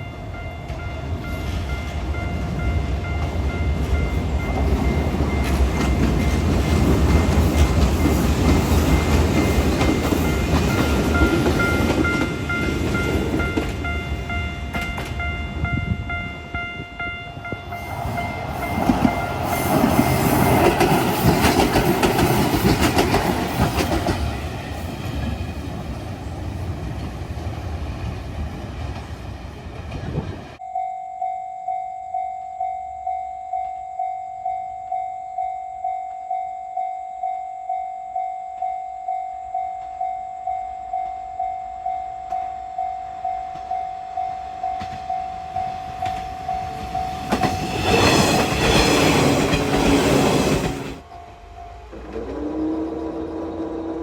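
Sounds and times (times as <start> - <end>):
clanging crossing alarm: 0.0 - 24.9, 30.6 - 53.1
train passing: 0.0 - 30.6, 40.8 - 54.0
level crossing bell ringing: 30.6 - 47.2.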